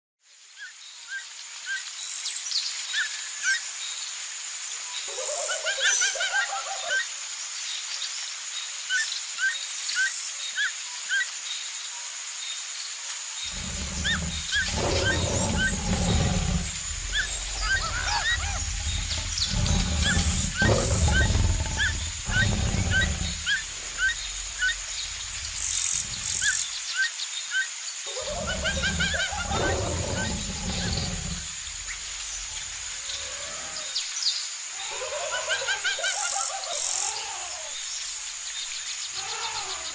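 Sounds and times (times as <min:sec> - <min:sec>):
deep animal calls: 0:13.5 - 0:26.7, 0:28.1 - 0:33.7
high insect drone: 0:13.5 - 0:26.8, 0:28.1 - 0:33.8
small birds chirping: 0:13.5 - 0:26.8, 0:28.1 - 0:33.5.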